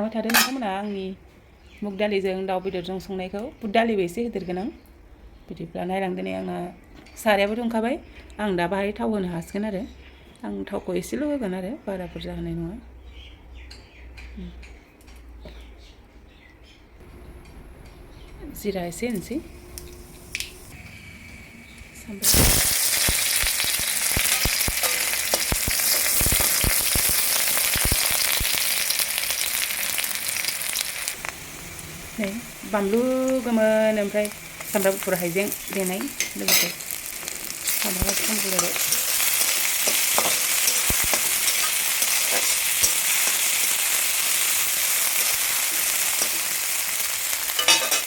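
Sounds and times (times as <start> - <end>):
oil sizzling and popping: 19.1 - 21.4, 22.1 - 48.0.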